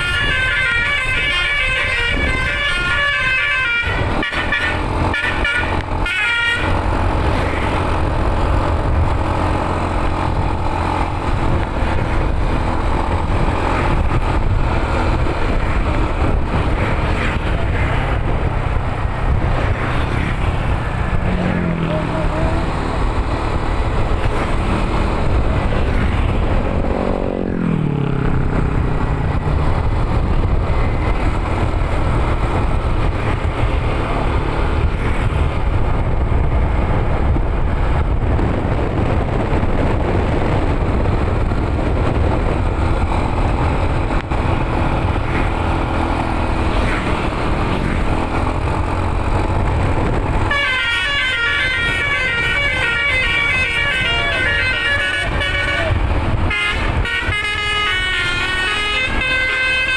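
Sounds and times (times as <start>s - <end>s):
multi-tone bus horn: 0.0s - 8.8s, 49.8s - 59.9s
vehicle engine and road noise: 0.0s - 59.9s.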